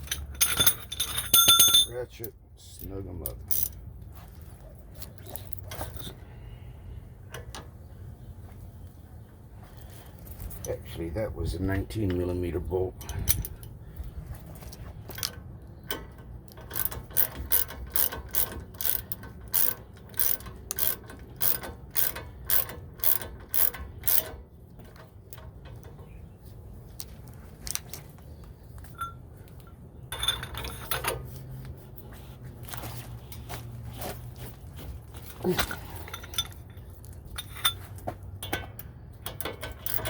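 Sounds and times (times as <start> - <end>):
hand ratchet clicking: 15.2 - 24.4, 38.4 - 40.0.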